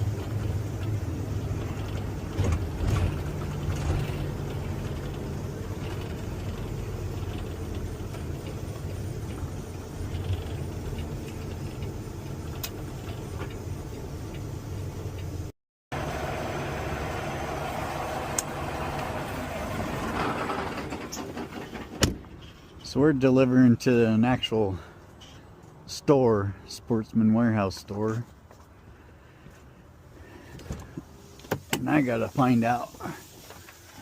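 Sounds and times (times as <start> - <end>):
knocks and rattles: 0.0 - 13.5, 19.8 - 22.6
truck engine drone: 0.0 - 25.6
road noise: 0.0 - 34.0.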